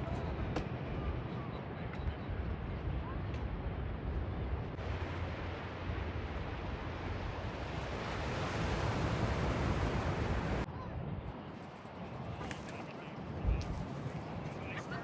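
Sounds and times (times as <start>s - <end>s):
wind rumbling on microphone: 0.0s - 15.0s
ocean surf washing: 4.8s - 10.7s.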